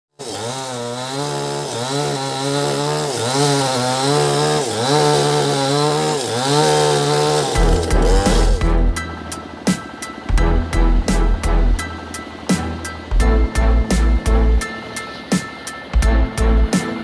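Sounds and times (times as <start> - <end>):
sawmill saw cutting timber: 0.1 - 17.0.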